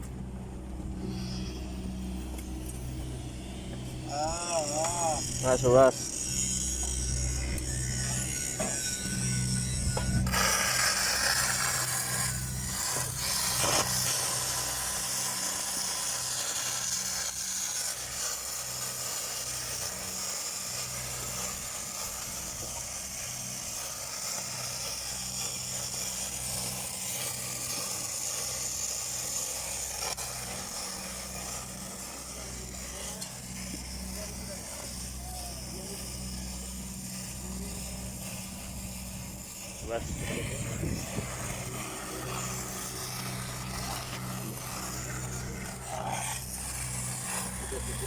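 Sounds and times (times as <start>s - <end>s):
low pulsing hum: 0.0s - 48.0s
welding arc crackling and hissing: 0.0s - 48.0s.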